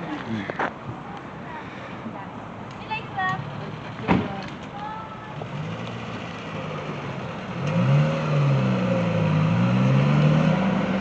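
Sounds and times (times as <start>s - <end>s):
vehicle engine accelerating: 5.3s - 11.0s.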